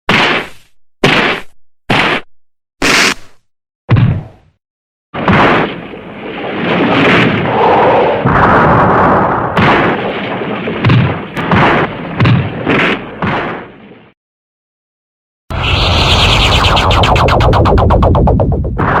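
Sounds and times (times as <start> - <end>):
loud explosion blast: 5.2 - 12.7.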